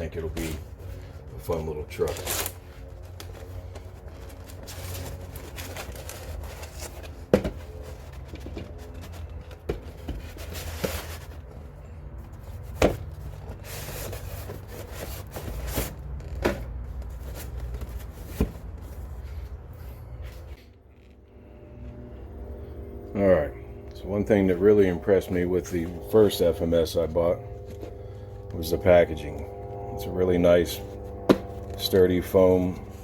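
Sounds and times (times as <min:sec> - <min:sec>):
cardboard box scraping and rustling: 0:00.0 - 0:19.4
low hum: 0:00.0 - 0:33.0.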